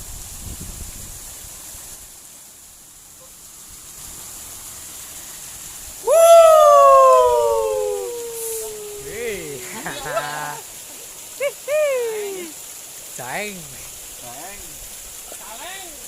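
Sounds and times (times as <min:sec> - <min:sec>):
running water in a ditch: 0:00.0 - 0:16.0
loud call sliding down in pitch: 0:06.1 - 0:09.8.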